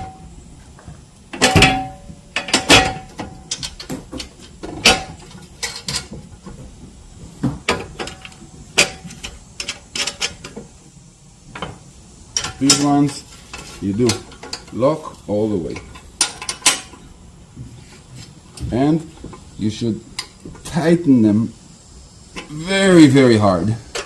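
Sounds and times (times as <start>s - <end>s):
metal hardware clinking: 1.3s - 6.2s, 7.7s - 10.6s, 12.3s - 14.9s, 15.6s - 17.1s.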